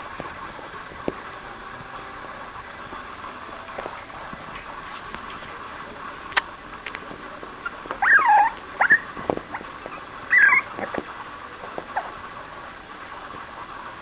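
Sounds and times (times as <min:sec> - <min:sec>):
puppies whining: 0:07.6 - 0:11.0, 0:11.9 - 0:12.2
puppy yip: 0:08.0 - 0:09.1, 0:09.9 - 0:10.7.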